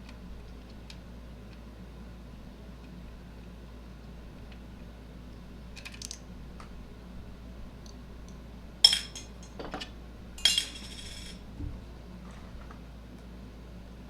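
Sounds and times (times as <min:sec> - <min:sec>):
metal hardware clinking: 0:08.8 - 0:11.4.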